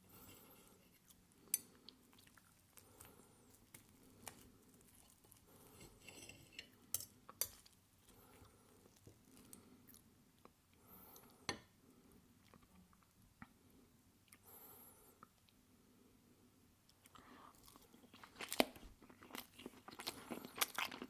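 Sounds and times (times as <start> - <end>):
close chewing: 1.0 - 5.8, 17.0 - 21.0
cutlery clicking on a plate: 6.1 - 7.6.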